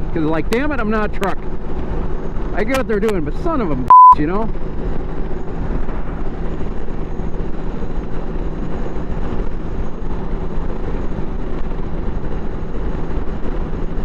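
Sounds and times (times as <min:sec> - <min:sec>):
road noise: 0:00.0 - 0:14.0
wind noise: 0:04.5 - 0:14.0.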